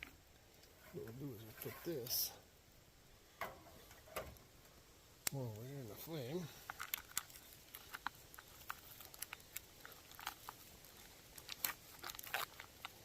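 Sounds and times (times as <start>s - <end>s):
wood fire crackling: 0.0s - 13.0s
sharp pops and snaps: 3.4s - 5.7s, 6.6s - 13.0s.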